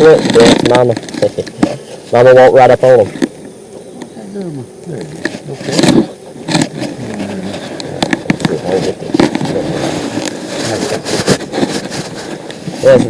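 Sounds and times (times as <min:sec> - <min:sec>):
wood scraping: 0:00.0 - 0:04.2, 0:05.0 - 0:13.0
wooden hive frames clicking: 0:05.0 - 0:13.0.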